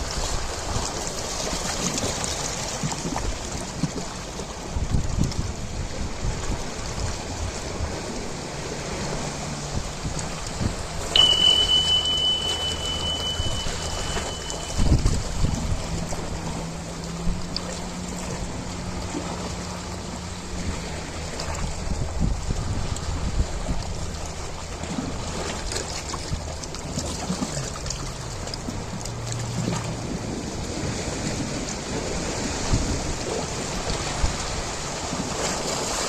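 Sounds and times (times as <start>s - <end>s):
ocean waves washing: 5.5s - 36.0s
high steady tone: 11.1s - 15.3s
low steady hum: 11.1s - 21.4s.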